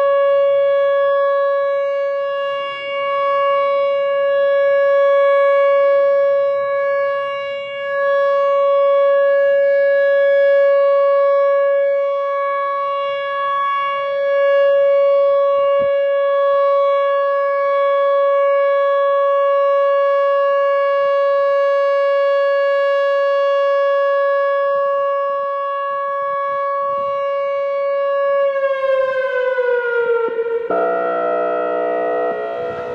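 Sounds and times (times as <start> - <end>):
siren-like emergency alarm: 0.0 - 32.9
harsh buzzing tone: 30.7 - 32.9.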